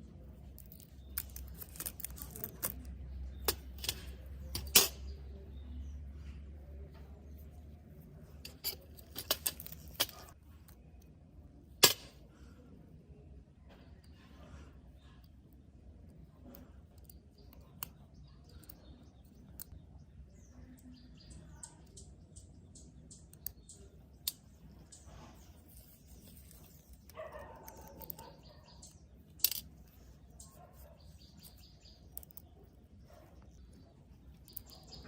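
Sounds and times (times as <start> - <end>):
small tools clicking and tapping: 0.5 - 5.2, 8.3 - 10.4, 23.1 - 32.6.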